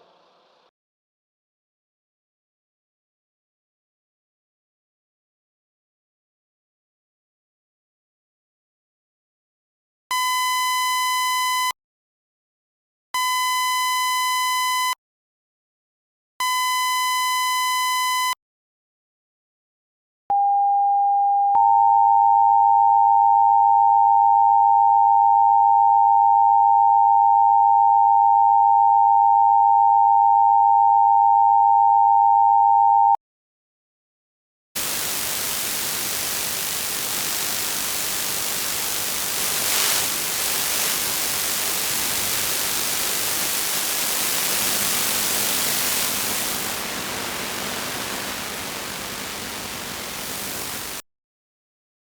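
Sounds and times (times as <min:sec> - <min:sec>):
static hiss: 0:34.8 - 0:51.0.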